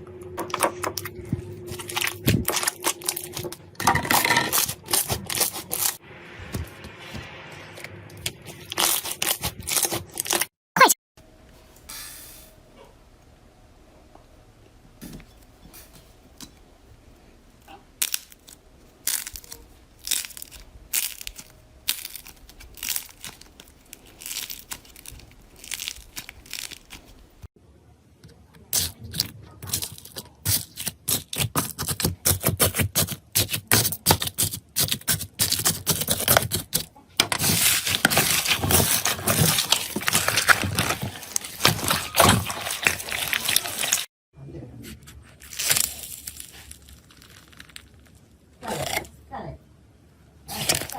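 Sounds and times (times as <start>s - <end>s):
slime popping and crackling: 1.7s - 3.5s, 8.6s - 10.4s, 18.0s - 27.3s, 28.7s - 36.8s, 37.4s - 44.1s, 45.4s - 48.2s.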